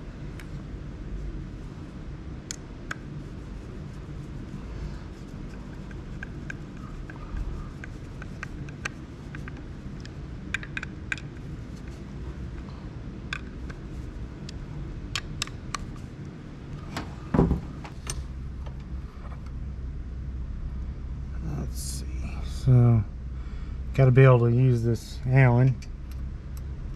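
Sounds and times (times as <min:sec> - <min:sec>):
low steady hum: 0:00.0 - 0:26.9
hand tools clicking and tapping: 0:05.9 - 0:11.4.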